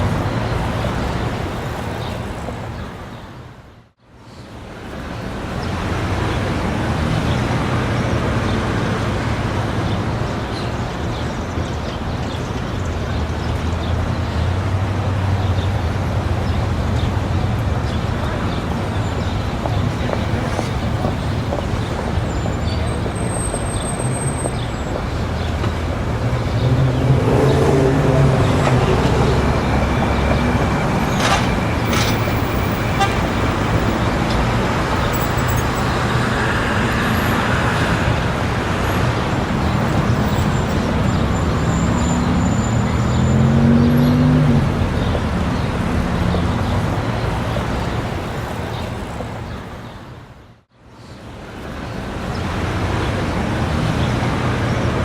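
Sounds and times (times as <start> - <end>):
traffic passing: 0.0 - 55.0
car horns: 26.6 - 34.0.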